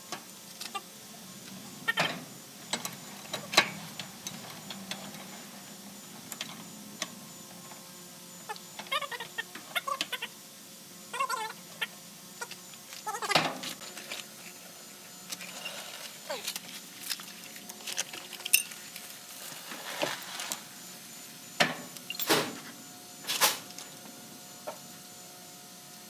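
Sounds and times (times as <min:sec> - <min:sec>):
sharp clinks and knocks: 0:18.3 - 0:19.0, 0:21.7 - 0:22.5.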